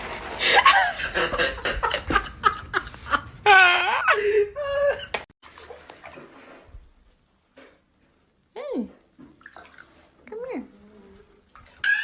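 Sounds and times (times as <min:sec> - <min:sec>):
person laughing hard: 0:00.4 - 0:05.2.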